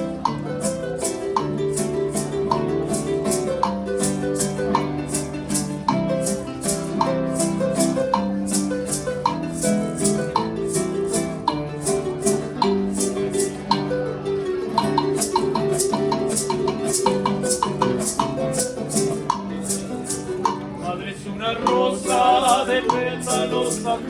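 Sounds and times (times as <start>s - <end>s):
maracas shaking: 0.0s - 21.0s, 21.6s - 24.0s
acoustic guitar: 0.0s - 24.0s
harp: 0.0s - 24.0s.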